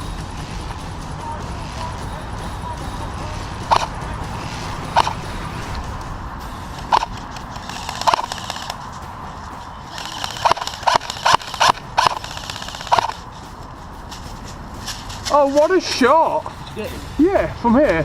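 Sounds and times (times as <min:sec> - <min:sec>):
airsoft rifle shots: 0:00.5 - 0:09.0, 0:09.9 - 0:13.2.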